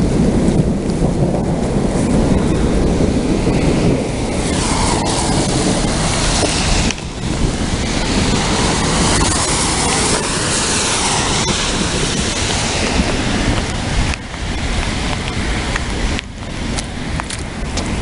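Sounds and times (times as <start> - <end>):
heavy rain: 0.0 - 18.0
wind buffeting microphone: 0.0 - 18.0
wind rushing: 0.0 - 18.0
vehicle swishing past on wet street: 3.0 - 16.0.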